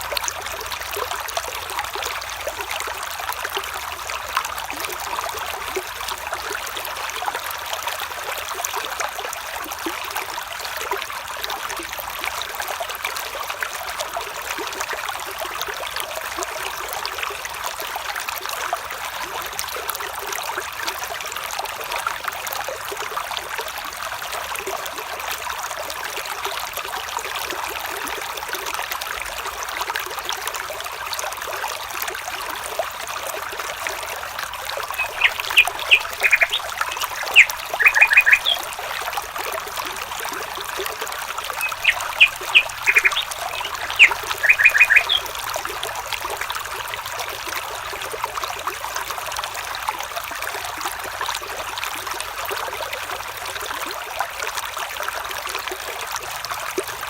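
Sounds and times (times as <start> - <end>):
water trickling over stones: 0.0 - 57.0
bird chirping: 34.9 - 38.9, 41.5 - 45.4.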